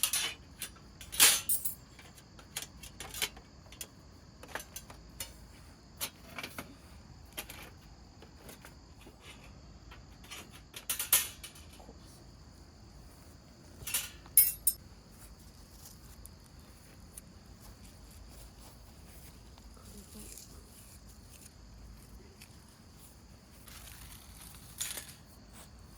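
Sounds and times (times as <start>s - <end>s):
clinks of small hard objects: 0.0s - 2.1s, 13.8s - 14.8s.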